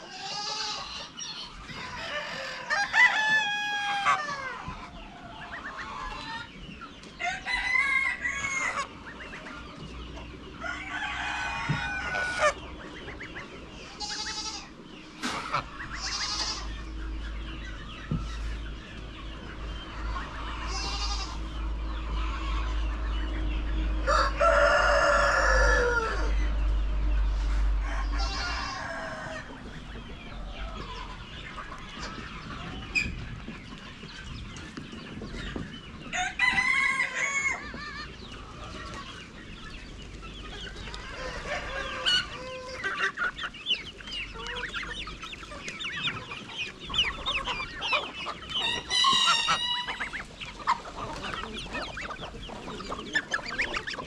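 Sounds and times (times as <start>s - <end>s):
chickens clucking: 0.0s - 54.0s
rooster crowing: 1.8s - 4.7s, 7.2s - 8.9s, 10.6s - 12.6s, 23.8s - 29.7s, 36.1s - 37.9s, 40.9s - 42.9s, 48.6s - 50.2s.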